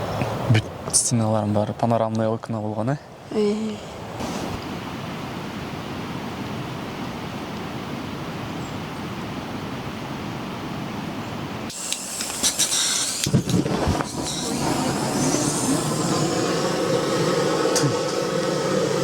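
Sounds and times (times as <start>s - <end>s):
steady rushing hiss: 3.2s - 5.0s, 11.7s - 19.0s.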